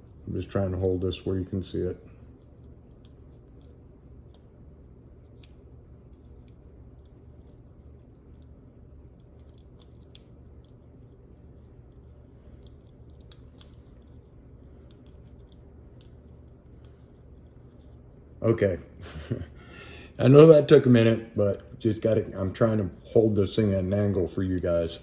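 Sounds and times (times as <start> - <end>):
steady low hum: 0.0 - 25.0
small clicks and taps: 9.2 - 18.0.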